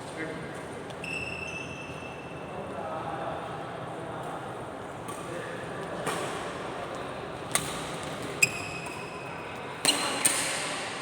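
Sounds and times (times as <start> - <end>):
racket hitting shuttlecock: 9.8 - 10.9.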